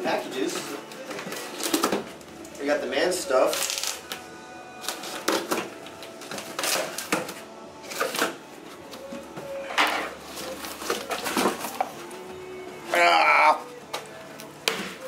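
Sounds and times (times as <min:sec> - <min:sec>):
faint background music: 0:00.0 - 0:15.0
packaging rustling and tearing: 0:00.8 - 0:02.6, 0:03.4 - 0:04.2, 0:04.8 - 0:08.4, 0:10.0 - 0:12.1.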